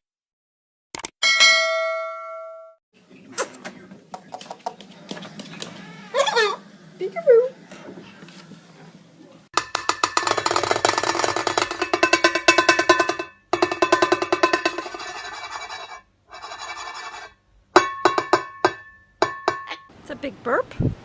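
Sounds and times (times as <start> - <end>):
fast drum-like rattle: 9.6 - 15.8.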